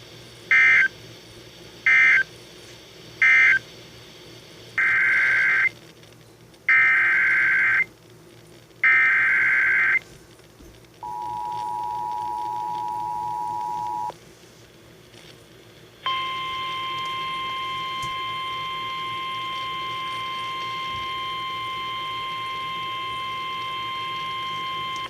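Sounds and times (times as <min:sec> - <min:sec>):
two-tone attention signal: 0:11.0 - 0:14.1, 0:16.1 - 0:25.0
buzzing data bursts: 0:16.0 - 0:25.0.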